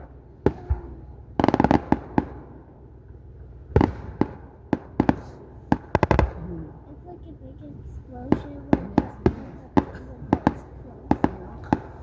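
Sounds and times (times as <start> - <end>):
fireworks bursting: 0.0 - 12.0.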